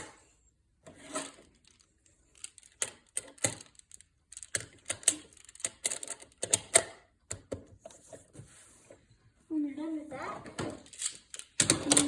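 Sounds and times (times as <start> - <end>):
plastic magnetic tiles clicking: 2.3 - 7.5.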